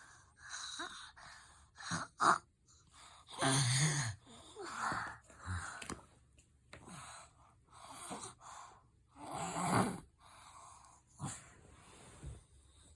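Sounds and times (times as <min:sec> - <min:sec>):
child snoring and gasping: 0:03.3 - 0:05.8, 0:09.2 - 0:10.1.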